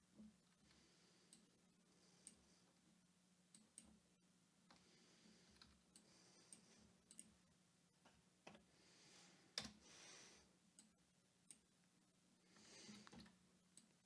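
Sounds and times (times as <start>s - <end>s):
computer mouse clicks: 5.5s - 7.4s.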